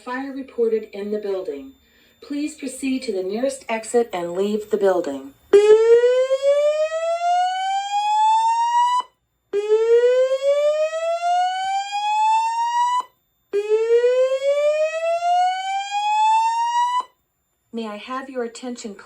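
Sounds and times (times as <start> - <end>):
rising whoop alarm tone: 5.6 - 17.1.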